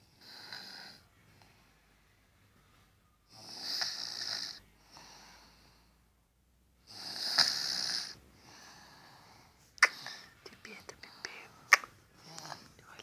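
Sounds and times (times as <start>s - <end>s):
baby snoring: 0.2s - 1.0s, 3.3s - 4.6s, 6.9s - 8.2s.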